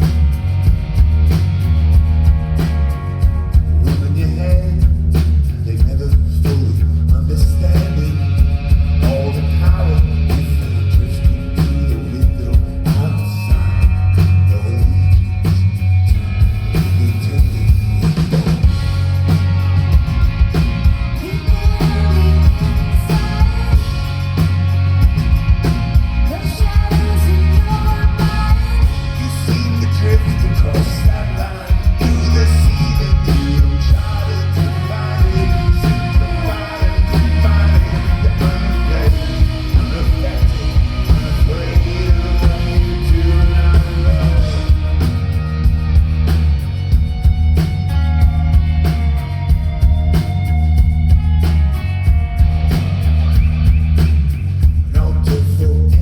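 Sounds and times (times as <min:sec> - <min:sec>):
drums and bass: 0:00.0 - 0:56.0
electric guitar: 0:00.0 - 0:56.0
person singing: 0:21.2 - 0:24.7, 0:26.2 - 0:45.8.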